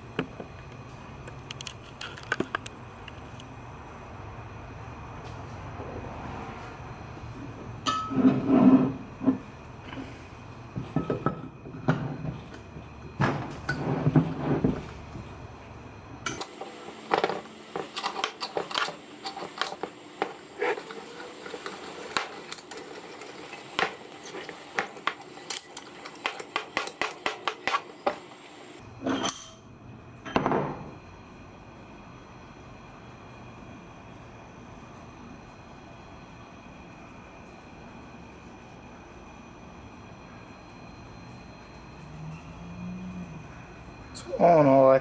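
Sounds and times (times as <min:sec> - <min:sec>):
metal vise parts clinking: 0:16.3 - 0:29.5.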